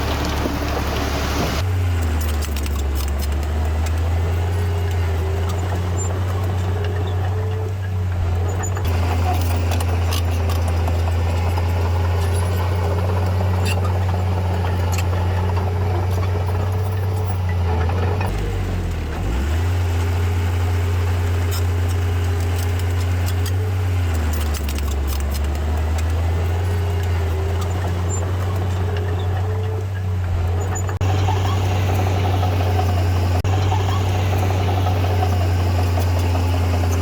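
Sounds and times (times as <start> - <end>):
diesel engine running: 0.0 - 37.0.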